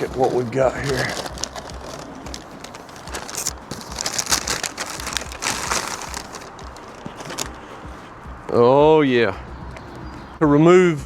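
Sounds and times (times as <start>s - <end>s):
packaging rustling and crinkling: 0.0s - 7.6s.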